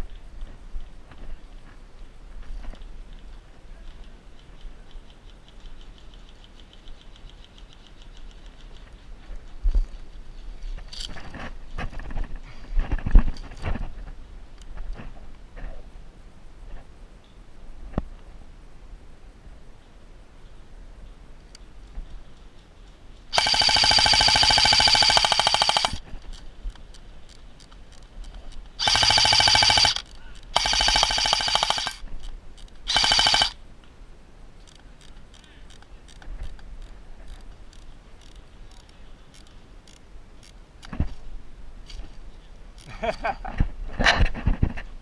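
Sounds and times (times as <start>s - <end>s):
faint clicks: 2.6s - 9.6s
airsoft rifle full-auto bursts: 23.3s - 26.0s, 28.8s - 32.0s, 32.9s - 33.6s.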